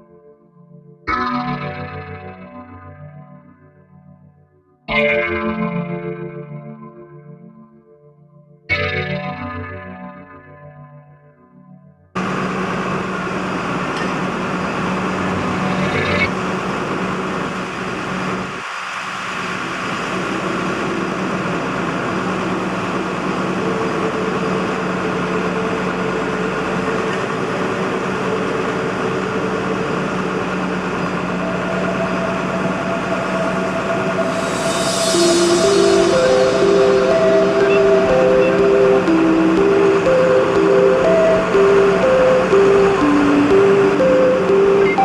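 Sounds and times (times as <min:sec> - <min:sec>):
drilling rig machinery running: 0:12.2 - 0:45.0.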